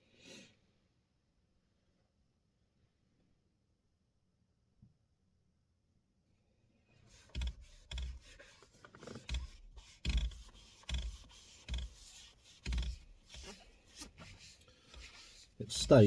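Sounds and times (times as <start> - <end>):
sponge wiping leather: 7.1 - 16.0.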